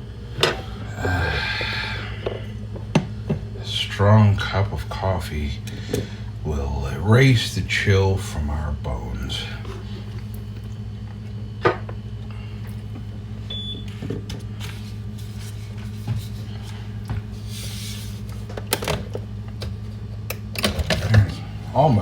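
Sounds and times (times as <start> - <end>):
steady low hum: 0.0 - 22.0
clicks and knocks of coffee things: 18.4 - 21.4.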